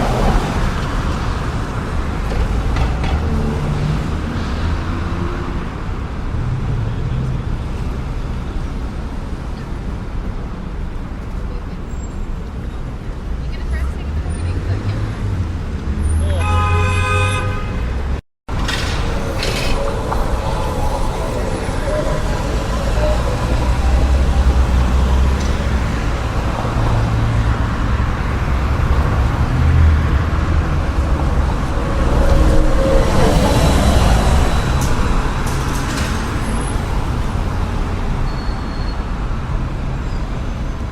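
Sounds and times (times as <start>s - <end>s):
cars and buses driving by: 0.0s - 40.9s
city traffic rumble: 0.0s - 40.9s
heavy vehicle passing: 17.9s - 38.3s.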